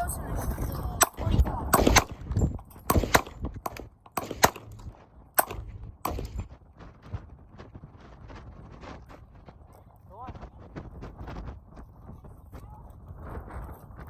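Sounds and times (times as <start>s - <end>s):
gunshots: 1.0s - 6.6s.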